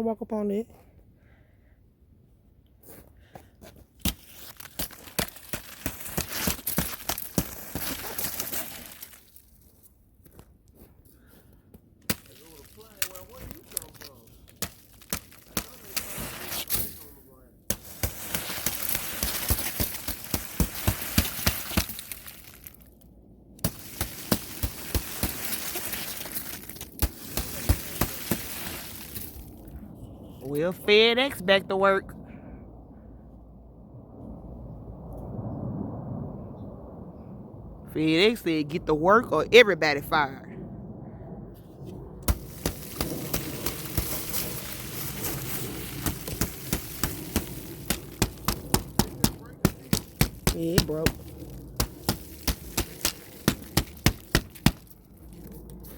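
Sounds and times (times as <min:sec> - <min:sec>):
footsteps crunching on icy snow: 0:02.8 - 0:16.9, 0:17.7 - 0:23.0, 0:23.6 - 0:29.6, 0:42.3 - 0:55.9.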